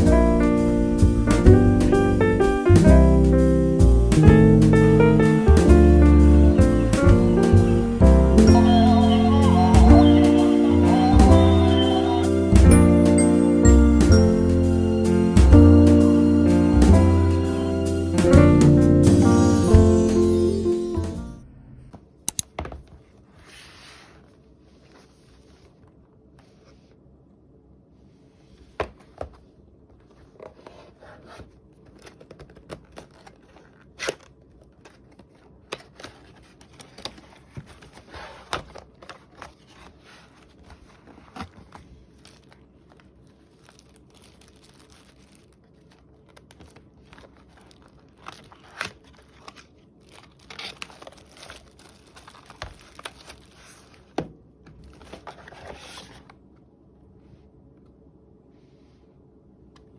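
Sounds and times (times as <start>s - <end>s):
packaging crinkling and tearing: 30.6s - 54.2s.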